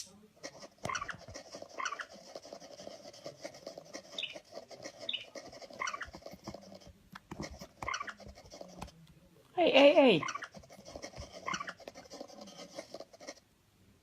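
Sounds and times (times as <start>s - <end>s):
small animal squeaking: 0.4s - 2.4s, 3.7s - 6.7s, 7.5s - 8.7s, 9.8s - 13.4s
light scratching and tapping: 0.4s - 9.3s, 10.2s - 13.4s.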